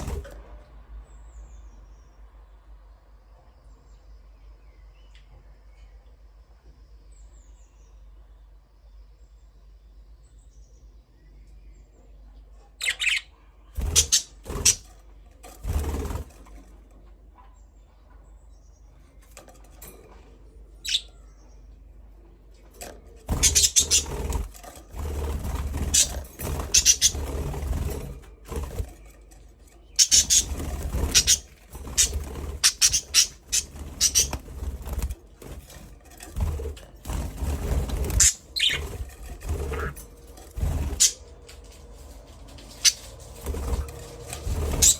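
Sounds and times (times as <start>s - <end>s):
budgerigars chirping: 12.8s - 14.8s, 20.8s - 21.1s, 23.3s - 24.1s, 30.0s - 34.4s, 38.2s - 38.8s.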